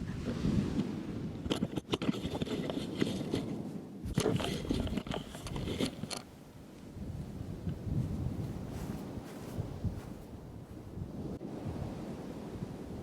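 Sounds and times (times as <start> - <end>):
wind buffeting microphone: 0.0 - 13.0
crackling rustles and scrapes: 0.8 - 6.3, 7.9 - 10.3.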